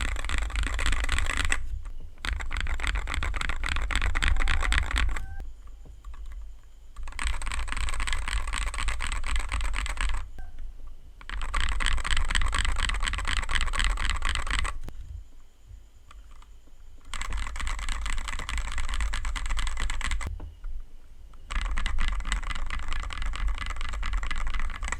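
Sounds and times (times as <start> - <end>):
mechanical keyboard typing: 0.0 - 1.6, 2.2 - 5.4, 6.0 - 10.4, 11.2 - 14.9, 16.1 - 20.3, 21.4 - 24.9.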